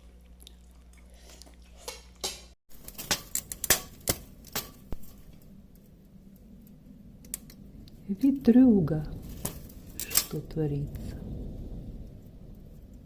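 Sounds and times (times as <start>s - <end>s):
low steady rumble: 3.5s - 13.0s.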